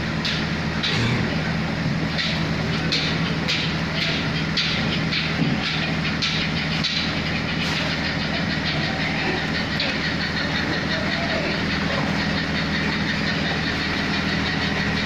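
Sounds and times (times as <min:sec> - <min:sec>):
engine-like hum: 0:00.0 - 0:15.0.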